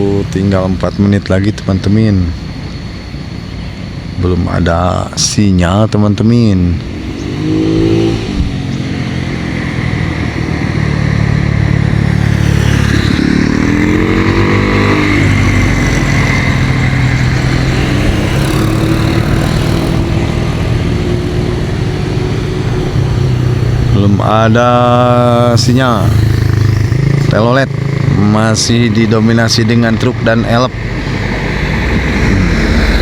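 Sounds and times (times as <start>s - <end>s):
vehicles passing close: 0.0s - 33.0s
engine revving pulling away: 6.8s - 33.0s.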